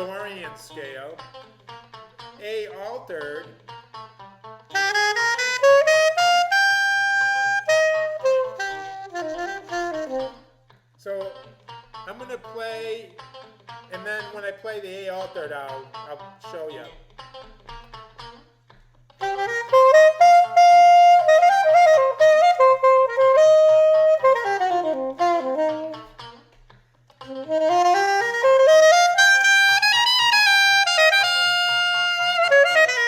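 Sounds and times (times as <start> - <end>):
saxophone improvising: 4.7 - 10.6, 19.2 - 26.5, 27.2 - 33.0.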